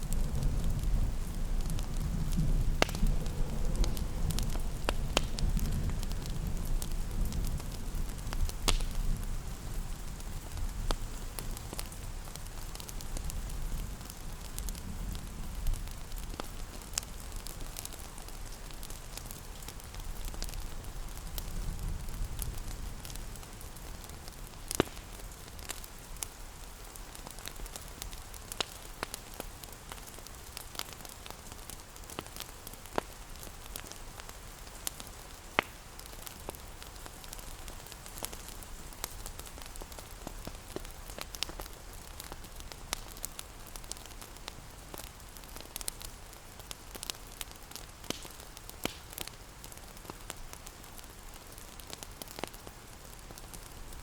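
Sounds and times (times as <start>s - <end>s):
rain hissing: 0.0s - 30.6s
fire crackling and popping: 0.0s - 54.0s.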